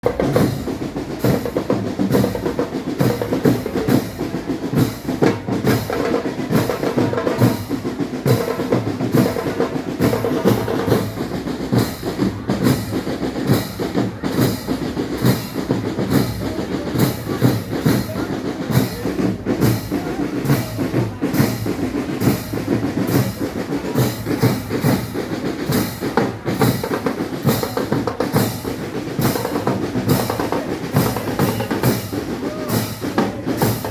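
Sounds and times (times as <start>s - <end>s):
bass and snare drum beat: 0.0s - 33.9s
band playing music: 6.4s - 33.9s.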